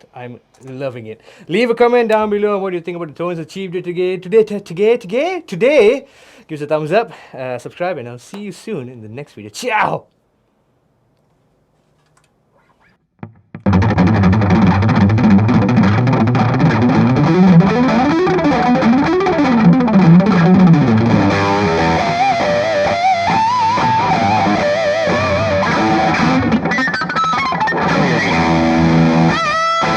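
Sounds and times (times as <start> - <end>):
distorted electric guitar: 13.2 - 29.9.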